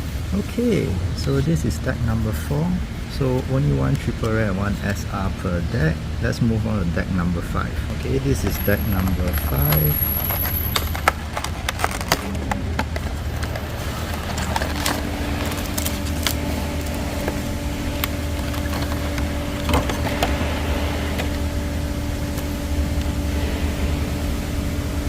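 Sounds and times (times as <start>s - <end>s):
car engine idling: 0.0s - 25.0s
steady hum: 0.0s - 25.0s
packaging clicks and rustles: 7.9s - 23.2s.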